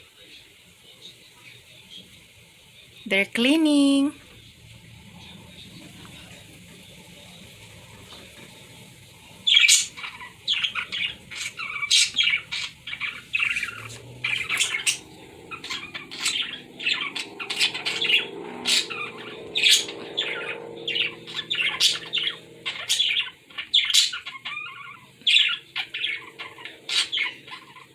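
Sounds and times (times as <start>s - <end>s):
pet birds squawking and chirping: 9.2s - 27.9s.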